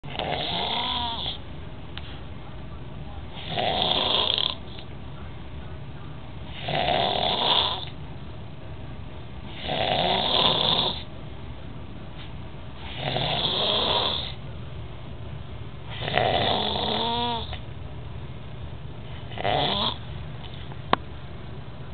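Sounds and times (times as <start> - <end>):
pet snoring: 0.1 - 1.4, 3.4 - 4.8, 6.5 - 7.9, 9.5 - 11.1, 12.8 - 14.4, 15.9 - 17.6, 19.3 - 20.0.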